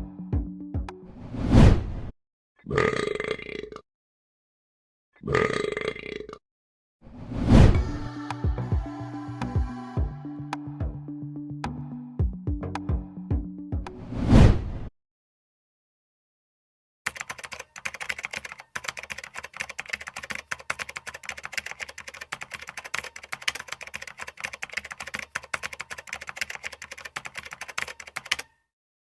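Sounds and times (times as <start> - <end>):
rapid irregular clicking: 17.1 - 28.5.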